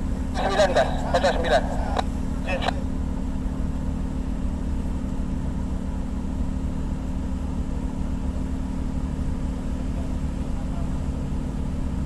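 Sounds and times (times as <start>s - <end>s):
ship engine droning: 0.3s - 2.8s.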